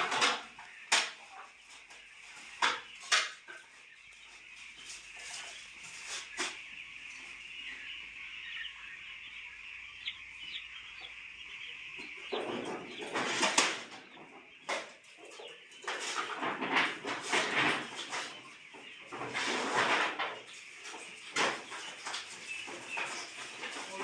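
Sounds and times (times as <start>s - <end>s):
chicks peeping: 0.0s - 24.0s
rustling and flapping: 12.3s - 14.4s, 15.8s - 18.4s.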